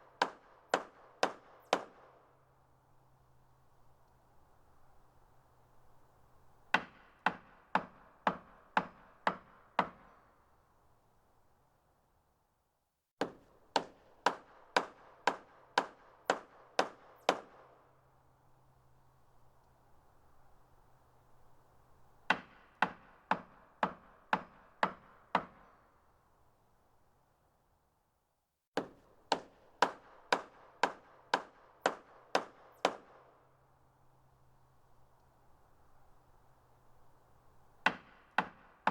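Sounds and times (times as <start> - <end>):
hammer striking wood: 0.2 - 2.0, 6.7 - 10.3, 13.2 - 17.6, 22.2 - 25.9, 28.8 - 33.3, 37.8 - 38.9.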